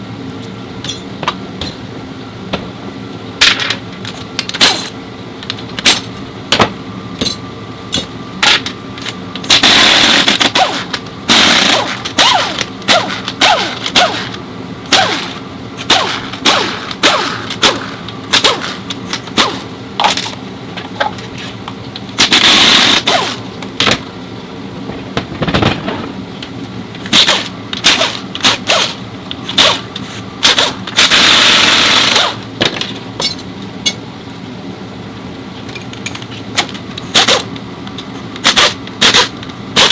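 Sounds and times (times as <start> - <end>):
impact wrench bursts: 9.4 - 20.3, 22.2 - 23.4, 27.0 - 32.5, 37.0 - 37.5, 38.4 - 39.9.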